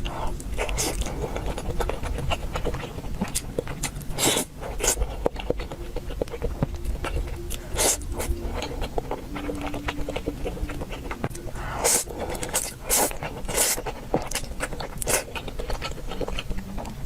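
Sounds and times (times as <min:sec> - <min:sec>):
close chewing with wet clicks: 0:00.0 - 0:17.0.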